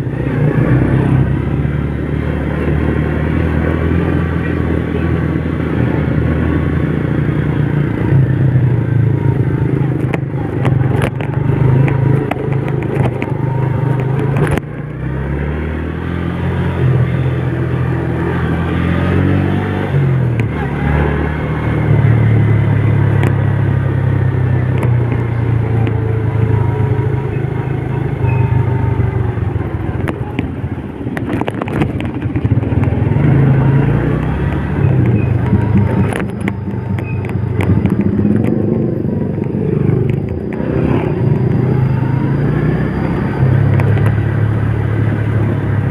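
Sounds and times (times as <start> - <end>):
vehicle engine running: 0.0 - 45.9
clicks and rattles: 9.9 - 14.8, 31.1 - 33.0, 34.5 - 40.6.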